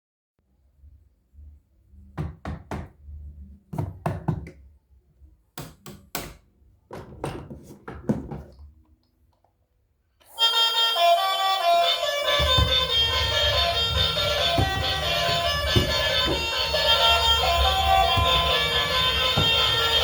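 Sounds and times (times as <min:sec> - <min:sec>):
music: 0:10.2 - 0:20.0
sharp knocks: 0:12.3 - 0:20.0.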